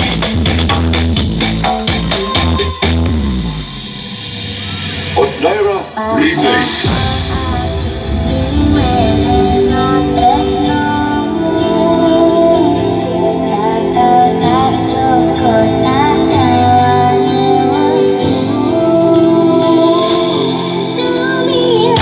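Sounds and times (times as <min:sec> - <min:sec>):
steady bass line: 0:00.0 - 0:03.8
loud music with female vocals: 0:00.0 - 0:22.0.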